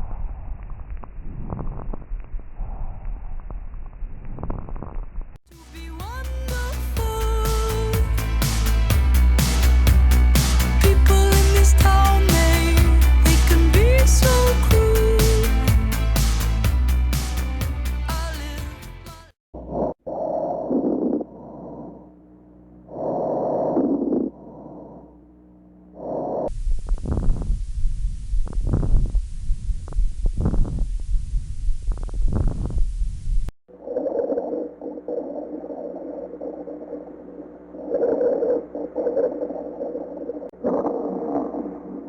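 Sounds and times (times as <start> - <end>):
steady low hum: 5.3 - 18.0, 21.2 - 42.0.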